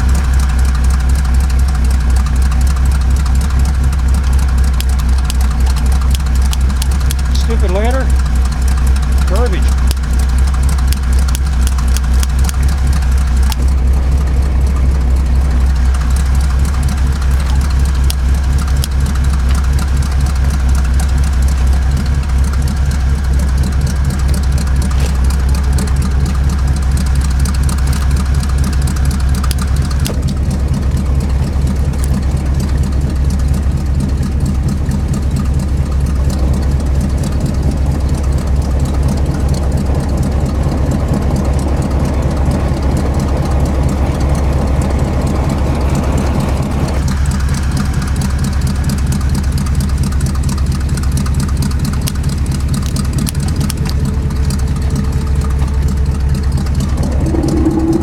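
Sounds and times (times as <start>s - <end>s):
truck engine idling: 0.0s - 58.0s
higher steady hum: 52.8s - 58.0s.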